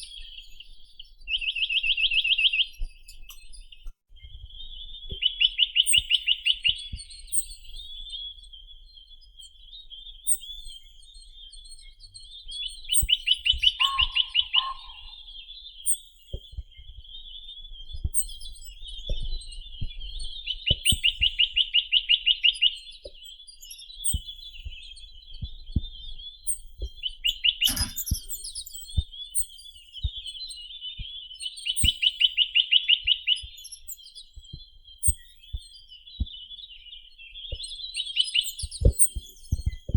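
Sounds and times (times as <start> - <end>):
soft bird twittering: 0.0 - 39.9
bird trilling: 13.0 - 16.0, 27.4 - 28.8
sharp click: 27.6 - 28.6.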